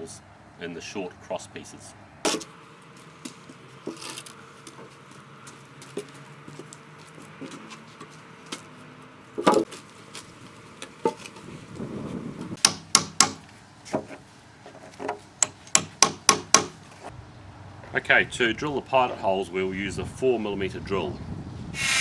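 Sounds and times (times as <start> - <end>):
timber board scraping: 2.3 - 12.6, 13.9 - 15.3
wooden boards knocking: 9.4 - 9.7.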